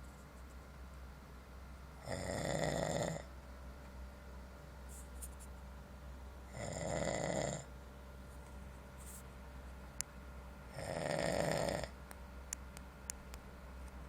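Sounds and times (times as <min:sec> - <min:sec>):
man snoring: 0:02.0 - 0:03.3, 0:06.5 - 0:07.7, 0:10.7 - 0:12.0.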